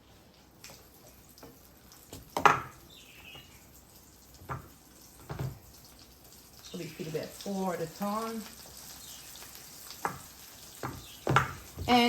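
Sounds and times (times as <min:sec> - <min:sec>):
faint sizzle: 0:00.0 - 0:12.0
spoon knocking against pan: 0:02.1 - 0:03.5, 0:04.4 - 0:05.6, 0:10.0 - 0:12.0.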